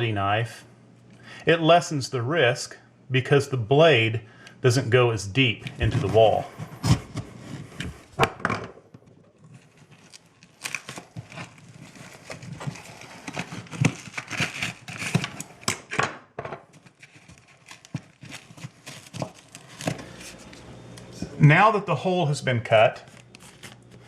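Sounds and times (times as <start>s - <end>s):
knife cutting through drywall: 10.7s - 15.4s.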